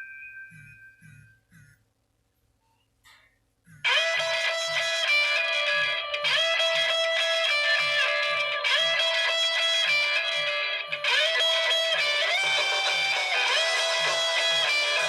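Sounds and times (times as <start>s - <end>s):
mobile phone guitar ringtone: 3.9s - 15.0s.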